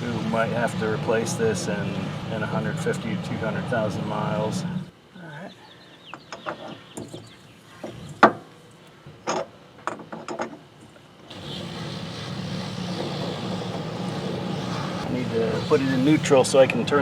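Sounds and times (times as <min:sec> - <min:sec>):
steady low hum: 0:00.0 - 0:06.2, 0:10.8 - 0:17.0.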